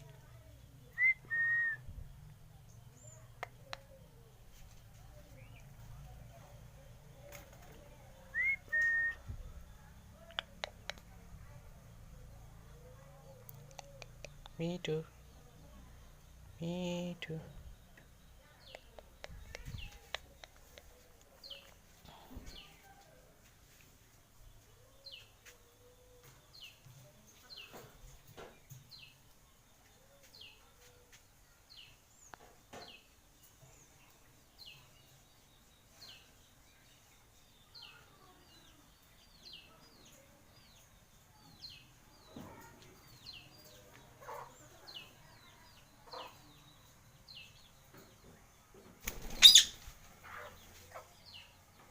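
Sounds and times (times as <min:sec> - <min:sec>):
parrot chirping: 0:49.4 - 0:49.8.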